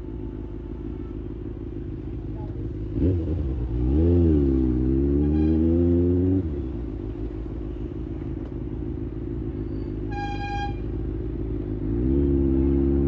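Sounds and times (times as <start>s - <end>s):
vehicle horn: 0.0s - 1.4s, 5.0s - 5.9s, 10.1s - 11.0s
motorcycle engine revving and idling: 0.0s - 13.0s.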